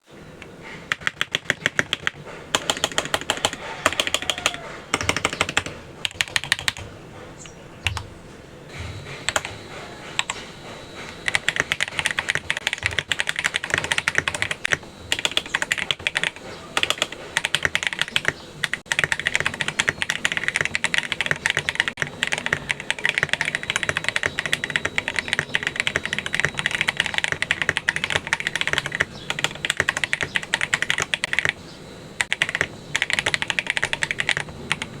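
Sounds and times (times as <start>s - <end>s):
mechanical keyboard typing: 0.9s - 6.9s, 9.3s - 9.5s, 11.1s - 31.6s, 32.2s - 35.0s.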